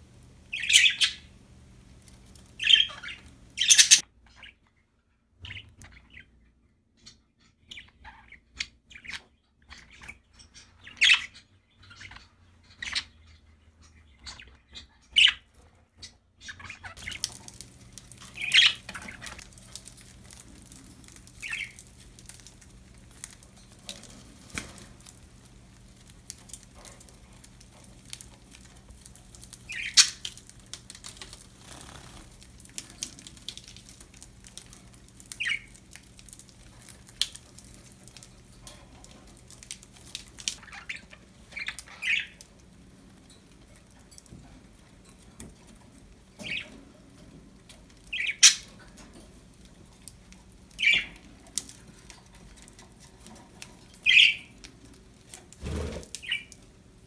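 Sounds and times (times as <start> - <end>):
budgerigars chirping: 0.5 - 1.4, 2.4 - 4.6, 7.0 - 15.5, 16.4 - 19.4, 20.2 - 22.6, 29.7 - 30.4, 35.2 - 35.8, 40.6 - 42.4, 48.1 - 48.8, 50.8 - 51.2, 54.0 - 54.6.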